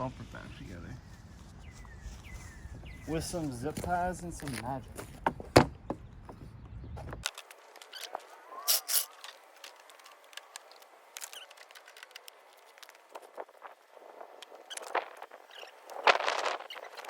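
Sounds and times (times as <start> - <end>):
plastic parts clicking: 7.2 - 13.1.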